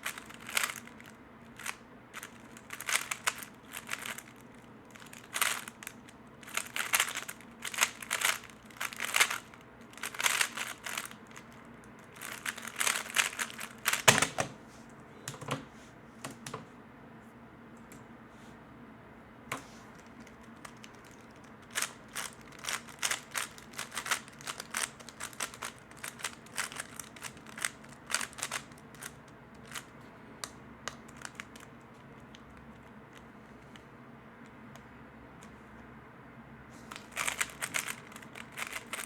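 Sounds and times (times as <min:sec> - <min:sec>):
plastic cube clicking: 0:00.0 - 0:14.4, 0:20.0 - 0:29.8, 0:36.9 - 0:39.0.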